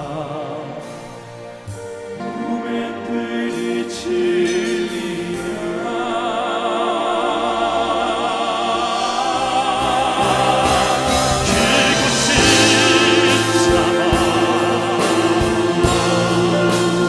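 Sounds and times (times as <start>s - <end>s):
male vocal quartet singing operatically: 0.0s - 1.4s, 2.0s - 17.0s
instrumental accompaniment: 0.0s - 17.0s.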